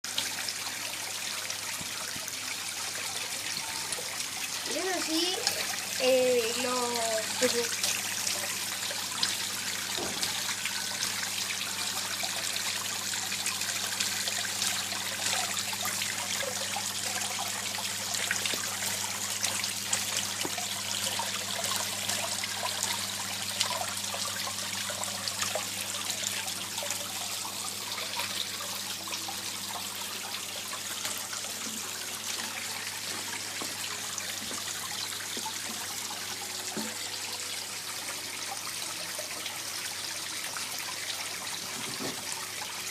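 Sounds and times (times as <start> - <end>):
small waterfall splashing into pond: 0.0 - 42.9.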